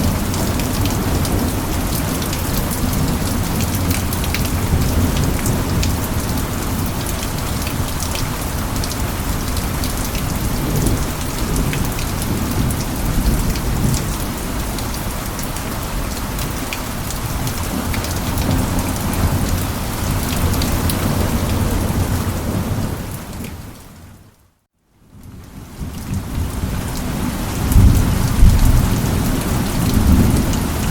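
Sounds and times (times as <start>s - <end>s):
heavy rain pattering: 0.0s - 30.9s
rolling thunder rumble: 26.1s - 30.9s.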